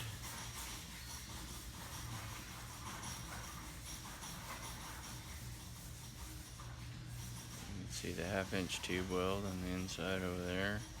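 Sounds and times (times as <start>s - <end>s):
low hum with hiss: 0.0s - 11.0s.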